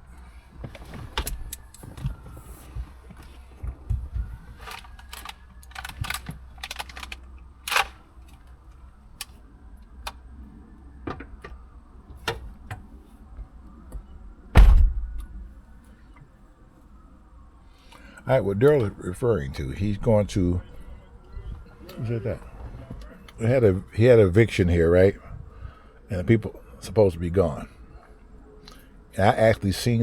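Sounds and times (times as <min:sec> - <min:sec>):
loud thump: 0:14.6 - 0:15.4
low rumble: 0:14.6 - 0:15.7.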